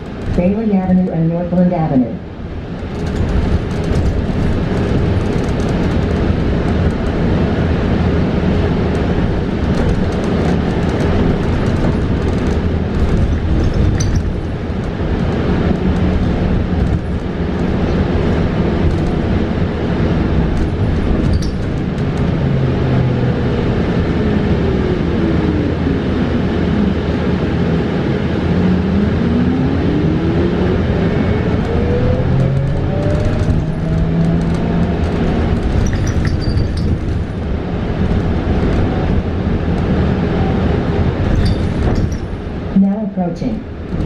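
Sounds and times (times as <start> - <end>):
bus body rattles: 0.0 - 0.6, 2.6 - 23.1, 31.6 - 42.7
road and tyre rumble: 0.0 - 44.0.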